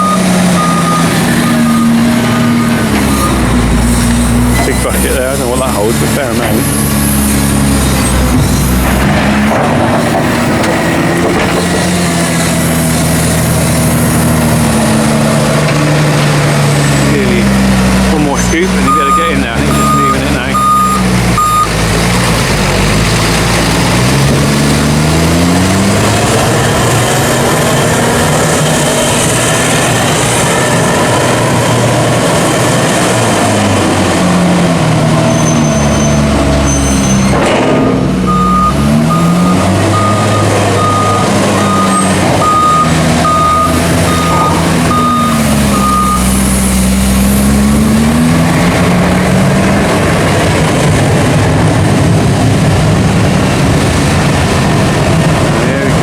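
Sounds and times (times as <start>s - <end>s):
reversing alarm beeping: 0.0s - 3.9s, 18.4s - 21.8s, 38.3s - 46.4s
diesel loader engine revving: 0.0s - 56.0s.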